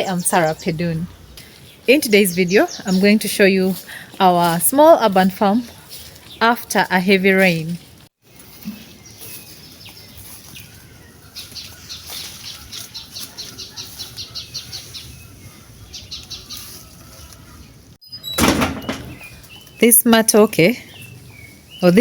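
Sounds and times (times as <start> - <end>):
small bird chirping: 8.3 - 19.9.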